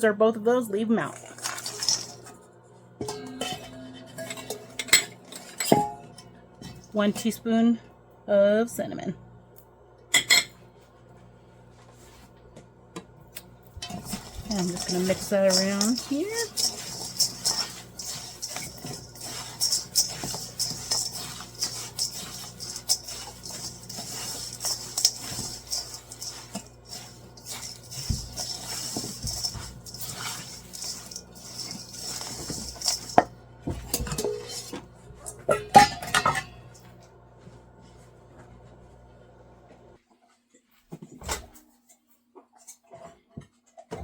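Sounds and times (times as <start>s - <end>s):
spoon stirring dry food in bowl: 1.0s - 2.4s, 3.0s - 5.9s, 13.8s - 34.8s
spoon clattering against bowl: 13.8s - 33.3s.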